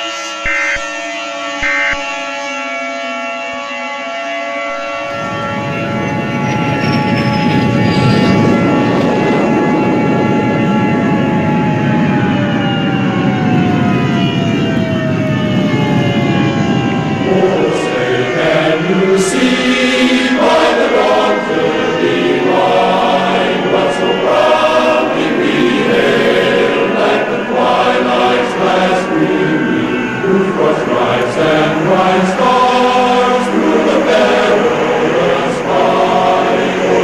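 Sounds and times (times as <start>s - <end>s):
choir singing: 4.7s - 11.3s, 16.4s - 37.0s.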